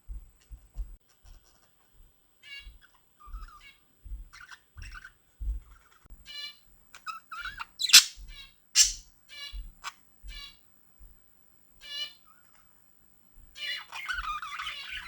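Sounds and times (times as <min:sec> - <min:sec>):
budgerigars chirping: 0:02.4 - 0:10.5, 0:13.6 - 0:15.0
harsh bird screeches: 0:07.4 - 0:08.2, 0:08.8 - 0:09.0.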